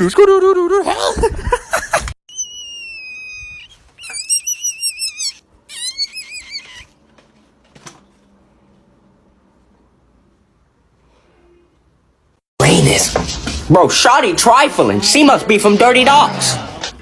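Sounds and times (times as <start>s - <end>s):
high whistle-like calls: 2.3s - 6.9s.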